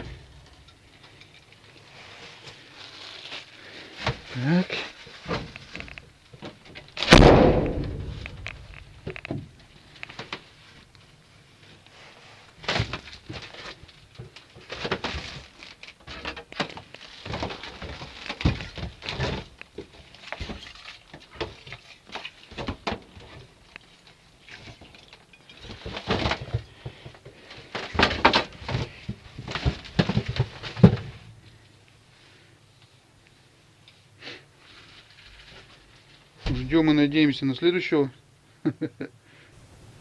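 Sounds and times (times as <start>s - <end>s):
rustling: 0.0s - 37.6s
heavy thump: 7.1s - 9.5s, 36.4s - 37.0s.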